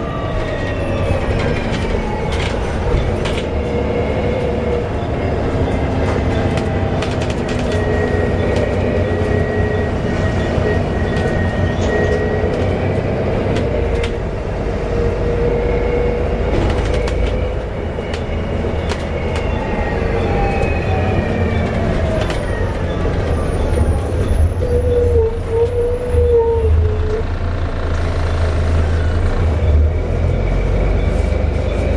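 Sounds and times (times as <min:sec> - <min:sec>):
bus interior rumble: 0:00.0 - 0:31.9
rattles and clicks: 0:01.2 - 0:03.7, 0:05.5 - 0:09.5, 0:16.4 - 0:19.6.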